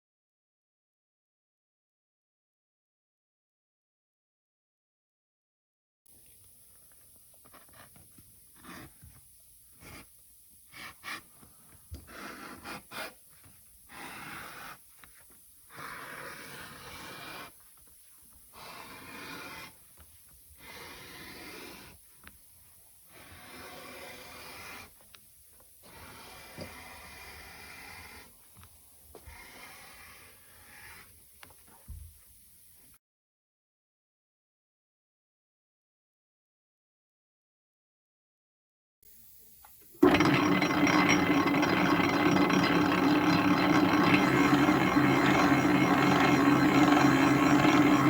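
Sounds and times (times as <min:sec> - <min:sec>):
scraping strokes on leather: 0:16.0 - 0:20.0, 0:20.6 - 0:22.1.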